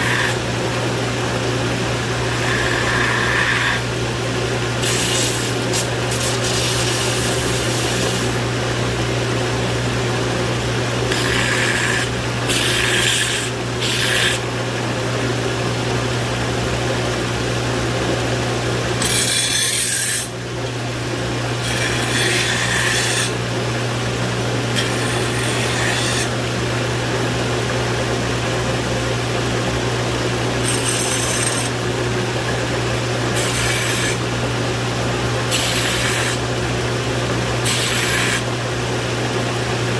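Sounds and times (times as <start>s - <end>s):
steel grinding on grinder: 0.0s - 0.4s, 2.2s - 3.9s, 4.8s - 8.4s, 11.1s - 14.4s, 19.0s - 20.4s, 21.6s - 23.4s, 24.7s - 26.4s, 30.6s - 31.8s, 33.3s - 34.2s, 35.5s - 36.4s, 37.6s - 38.5s
power grinder humming: 0.0s - 0.5s, 2.2s - 3.9s, 4.8s - 8.4s, 11.0s - 14.4s, 21.6s - 23.4s, 24.7s - 26.7s, 30.5s - 31.8s, 33.3s - 34.2s, 35.2s - 36.7s, 37.3s - 38.5s.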